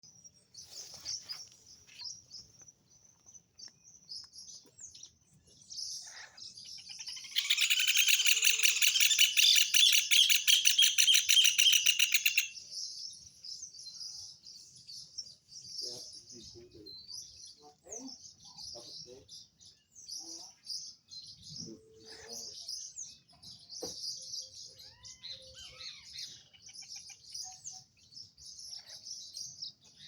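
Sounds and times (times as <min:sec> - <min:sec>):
songbirds chirping: 0:00.0 - 0:30.0
bird singing rapid notes: 0:00.1 - 0:13.0.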